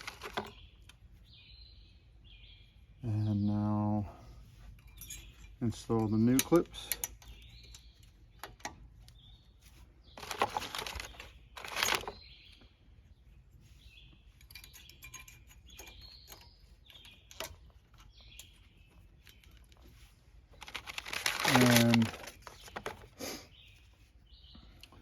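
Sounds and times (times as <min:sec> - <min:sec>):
birds chirping faintly: 0:00.0 - 0:25.0
metallic rattles: 0:04.7 - 0:09.2, 0:10.2 - 0:12.4, 0:14.2 - 0:23.2
metal clips clinking and clicking: 0:04.8 - 0:07.8, 0:14.4 - 0:18.6.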